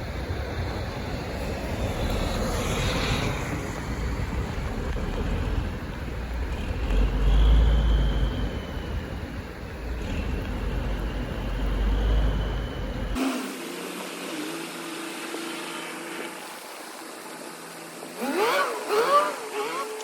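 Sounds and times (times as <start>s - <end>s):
loud low vehicle rumble: 0.0s - 14.3s
traffic on a wet highway: 0.0s - 20.0s.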